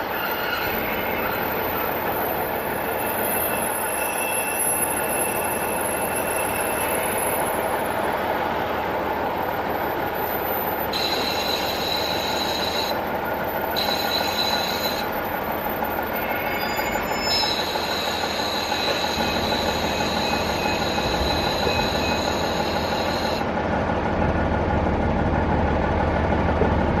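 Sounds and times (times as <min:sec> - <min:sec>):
high-pitched wheel squeal: 0:00.0 - 0:08.0, 0:10.2 - 0:23.5
railcar wheels and wind rumbling: 0:00.0 - 0:27.0.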